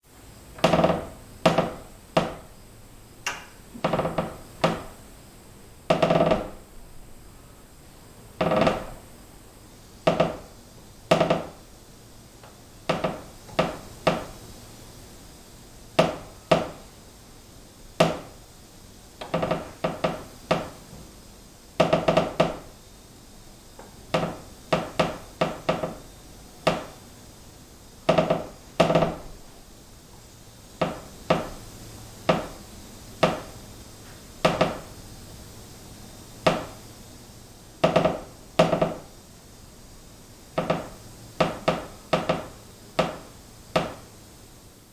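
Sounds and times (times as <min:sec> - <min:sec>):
wooden beam creaking: 0:00.6 - 0:02.4, 0:03.7 - 0:04.9, 0:05.9 - 0:06.6, 0:08.4 - 0:09.0, 0:10.1 - 0:10.5, 0:11.1 - 0:11.6.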